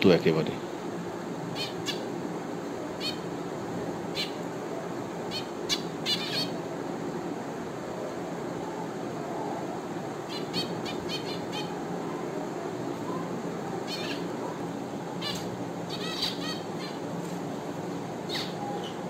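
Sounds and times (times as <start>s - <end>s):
low background noise: 0.0s - 19.0s
finches chirping: 1.5s - 2.2s, 2.8s - 6.6s, 9.4s - 17.2s, 18.1s - 19.0s.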